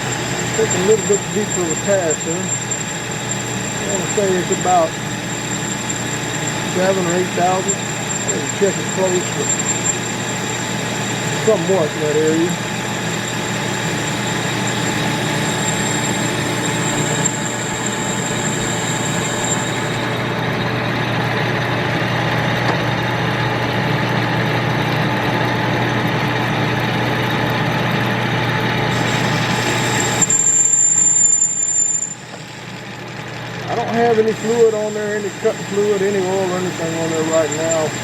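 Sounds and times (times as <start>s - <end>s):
cutting tool on metal: 0.0s - 20.2s, 28.9s - 32.6s, 33.7s - 38.0s
thin high whine: 0.0s - 20.8s, 28.8s - 33.0s, 33.6s - 38.0s
lathe motor humming: 0.0s - 38.0s.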